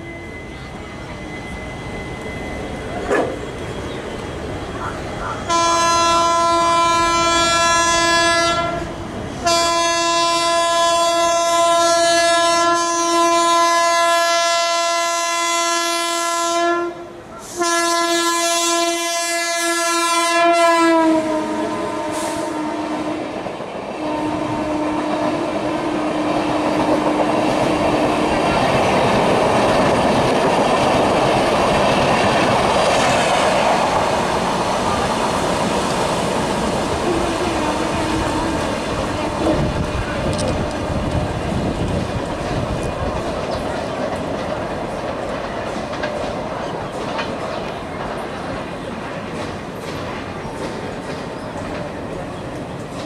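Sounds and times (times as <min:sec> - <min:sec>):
train coaches rumbling and clattering: 0:00.0 - 0:53.0
locomotive horn blowing: 0:05.5 - 0:23.4, 0:24.0 - 0:26.3, 0:37.2 - 0:40.9.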